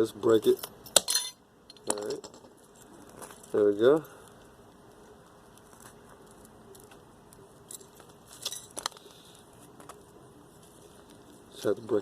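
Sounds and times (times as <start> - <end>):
loose metal parts clinking: 0.4 - 2.6, 7.7 - 8.9.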